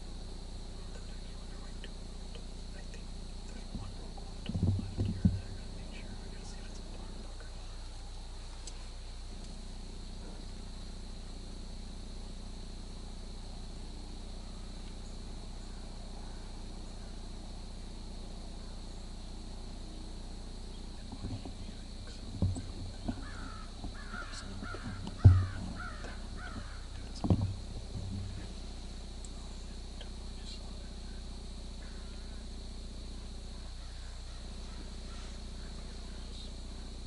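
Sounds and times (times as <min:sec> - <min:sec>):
dull low thumps: 0:00.9 - 0:11.5, 0:20.7 - 0:37.0
crow cawing: 0:23.1 - 0:27.1, 0:31.8 - 0:32.4, 0:33.6 - 0:36.2.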